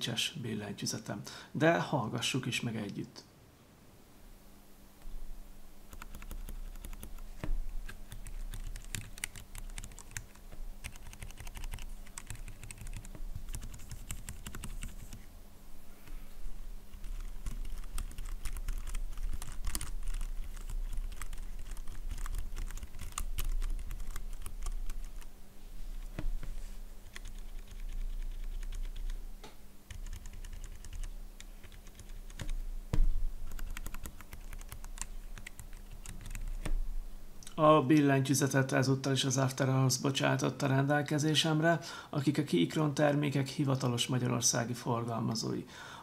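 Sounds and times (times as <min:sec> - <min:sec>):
mechanical keyboard typing: 0:05.9 - 0:15.2, 0:16.9 - 0:25.3, 0:27.0 - 0:29.2, 0:29.9 - 0:32.6, 0:33.5 - 0:36.7.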